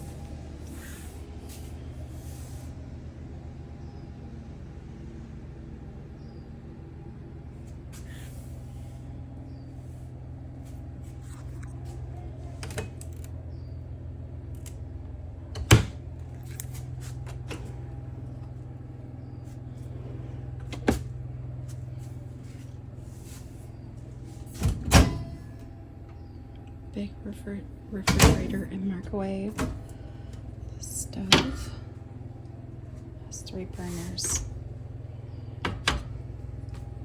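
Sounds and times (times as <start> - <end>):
fan humming: 0.0 - 37.0.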